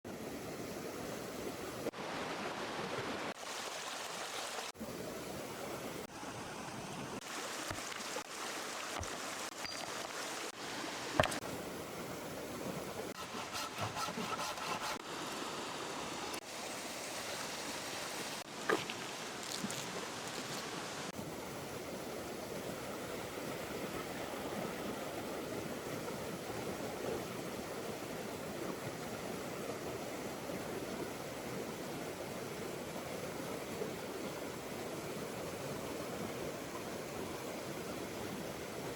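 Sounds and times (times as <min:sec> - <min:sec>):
river water rushing: 0:06.1 - 0:12.7.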